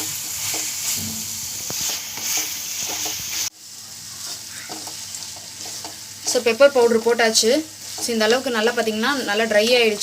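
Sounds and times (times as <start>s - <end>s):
spoon scraping a pan: 0.0s - 3.5s, 4.2s - 6.4s
chicken sizzling in a pan: 0.0s - 10.0s.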